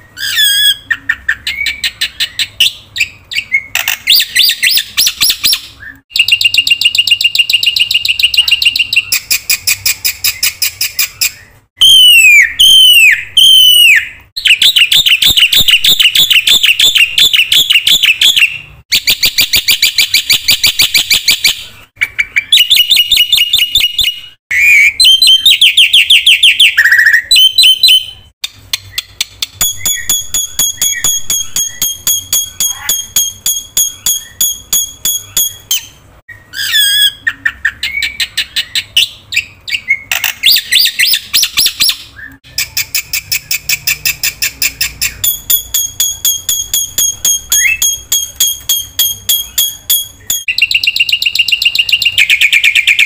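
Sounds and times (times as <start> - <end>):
starling singing: 0.0 - 21.4, 28.8 - 53.0.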